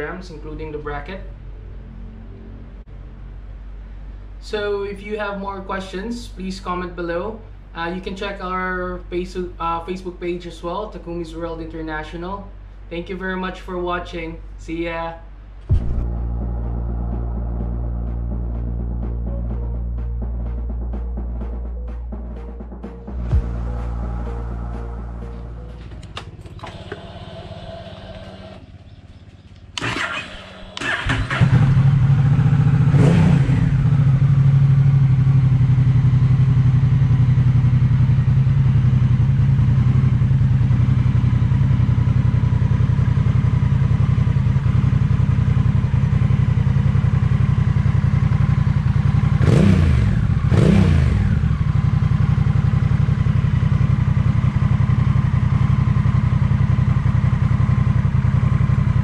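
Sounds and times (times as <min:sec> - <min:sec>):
motorcycle engine idling: 0:23.4 - 0:59.0
motorcycle throttle blips: 0:25.8 - 0:59.0.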